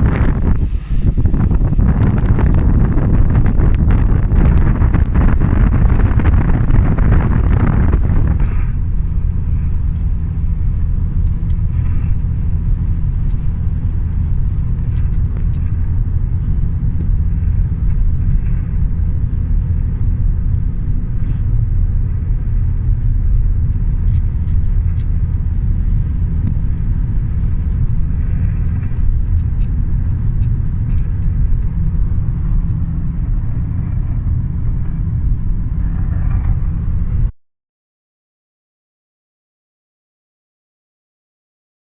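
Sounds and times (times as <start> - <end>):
car driving rumble: 0.0 - 37.3
wind noise on microphone: 0.0 - 37.3.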